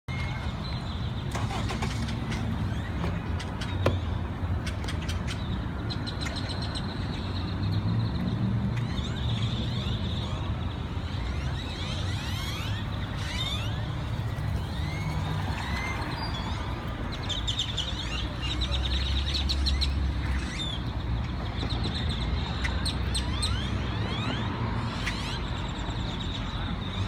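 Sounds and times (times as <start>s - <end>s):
road traffic rumble: 0.1s - 27.0s
flock of birds calling: 8.7s - 20.9s.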